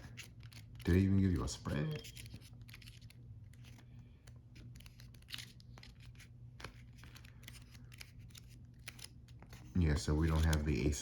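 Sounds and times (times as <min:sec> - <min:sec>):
low steady hum: 0:00.0 - 0:11.0
pages rustling: 0:00.0 - 0:11.0.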